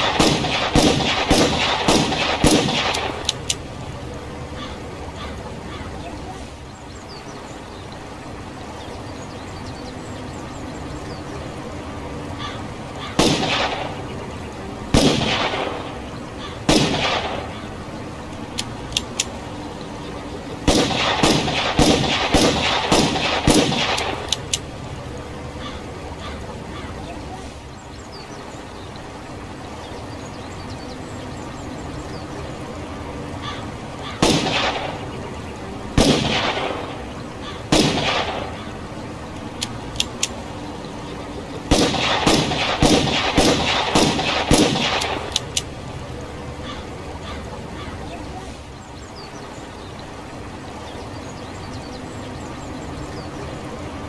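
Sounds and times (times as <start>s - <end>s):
revolver gunshots echoing: 0.0s - 3.7s, 13.0s - 14.1s, 14.9s - 17.9s, 20.6s - 24.7s, 34.2s - 35.2s, 36.0s - 38.8s, 41.6s - 45.7s
faint light clicks: 2.8s - 3.8s, 18.3s - 19.5s, 23.5s - 24.7s, 39.4s - 40.5s, 44.9s - 45.8s.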